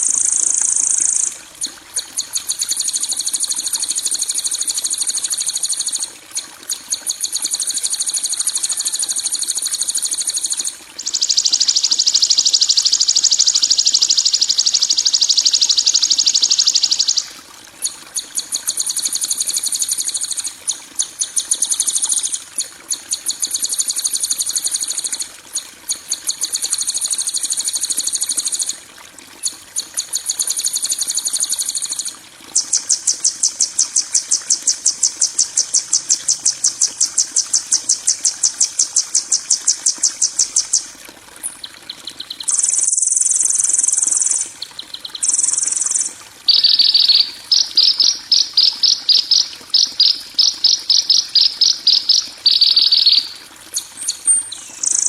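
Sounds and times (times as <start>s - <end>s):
bird rattling trills: 10.4s - 17.3s, 42.2s - 55.0s.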